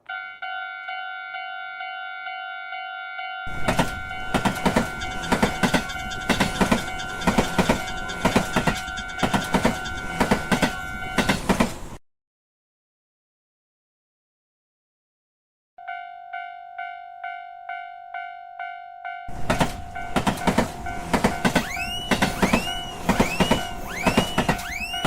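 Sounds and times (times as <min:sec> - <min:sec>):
railroad crossing bell: 0:00.0 - 0:11.5, 0:15.8 - 0:25.0
train wheels clattering: 0:03.5 - 0:12.0, 0:19.3 - 0:25.0.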